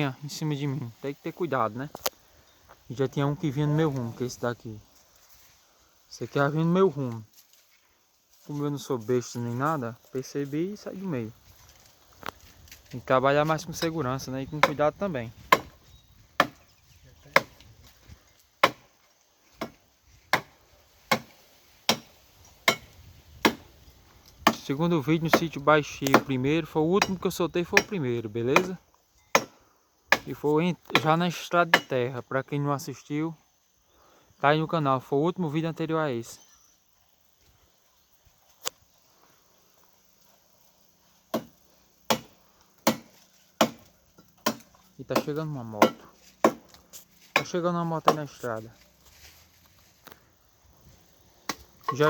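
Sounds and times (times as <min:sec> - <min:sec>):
blade chopping wood: 0:18.6 - 0:18.9, 0:19.6 - 0:23.7, 0:41.3 - 0:48.2.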